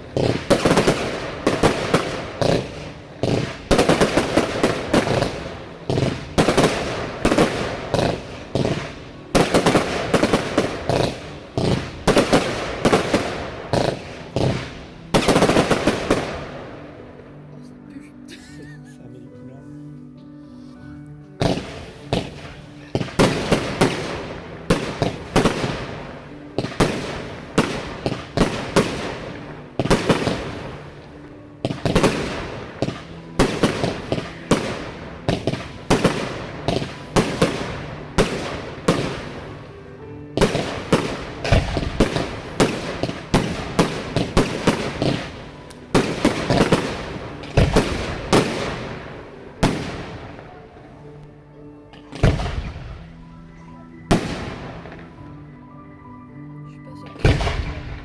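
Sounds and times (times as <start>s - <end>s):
fireworks bangs with crackling: 0.0s - 16.7s, 21.4s - 39.7s, 40.4s - 50.5s, 52.2s - 53.1s, 54.1s - 55.1s, 57.2s - 58.0s
deep fireworks booms: 0.0s - 17.1s, 21.4s - 50.6s, 52.1s - 53.2s, 54.1s - 55.1s, 57.2s - 58.0s.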